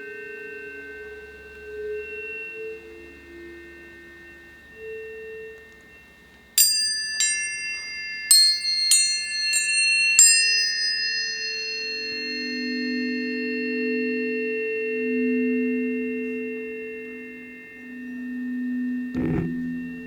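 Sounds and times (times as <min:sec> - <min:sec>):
tuning forks struck ringing: 0:00.0 - 0:20.0
soft low tones: 0:19.2 - 0:20.0.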